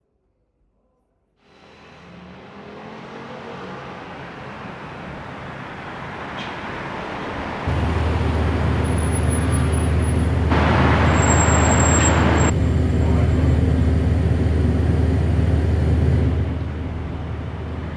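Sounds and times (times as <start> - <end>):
bright rushing surge: 7.7 - 12.6
noisy swell: 7.7 - 17.9.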